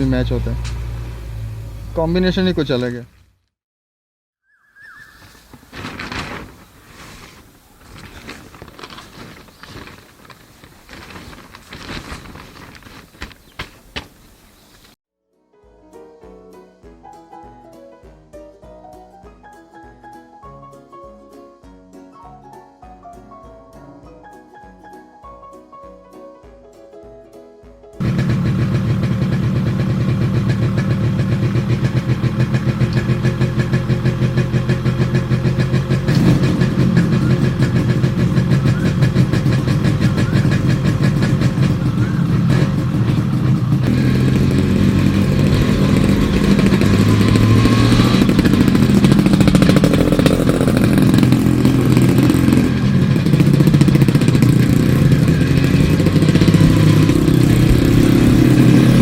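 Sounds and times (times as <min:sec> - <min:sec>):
motorcycle revving and pulling away: 0:00.0 - 0:02.7, 0:28.0 - 0:59.0
motorcycle engine idling: 0:28.0 - 0:59.0.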